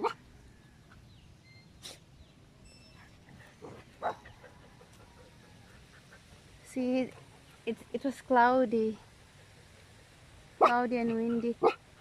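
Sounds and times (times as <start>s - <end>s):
dogs barking: 0.0s - 0.2s, 3.6s - 5.6s.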